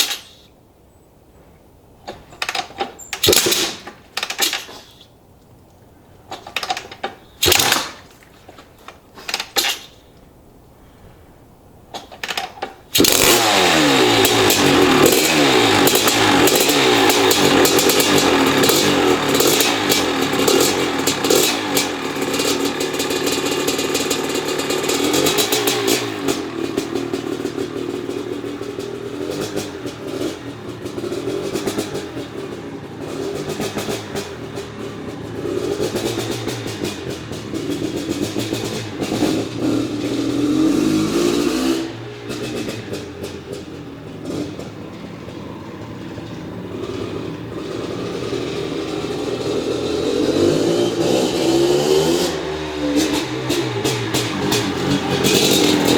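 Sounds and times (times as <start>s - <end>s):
dirt bike engine revving: 7.4s - 8.1s, 12.9s - 55.9s.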